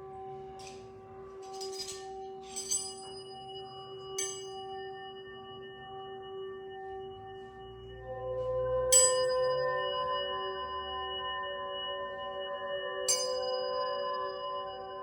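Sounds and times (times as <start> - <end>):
bright metal strikes ringing: 0.6 - 5.0.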